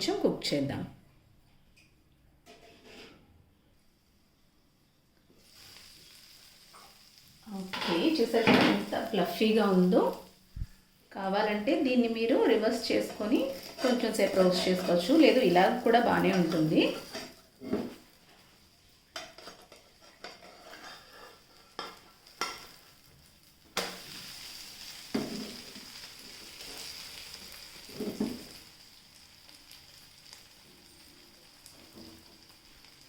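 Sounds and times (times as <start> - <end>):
utensil scraping and knocking pan: 2.5 - 3.2, 19.2 - 22.6
omelet sizzling in a pan: 5.2 - 33.0.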